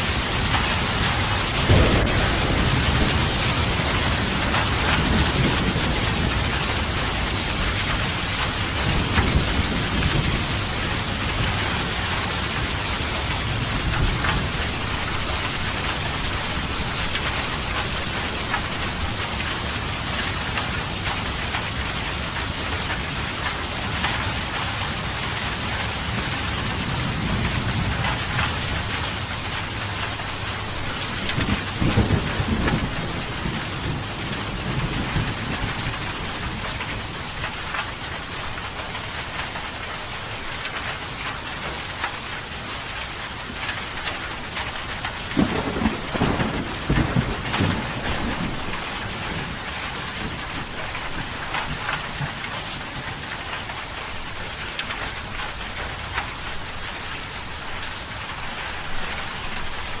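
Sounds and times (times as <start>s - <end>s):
thunder rumbling: 0.0s - 39.5s, 43.3s - 60.0s
heavy rain: 0.0s - 60.0s.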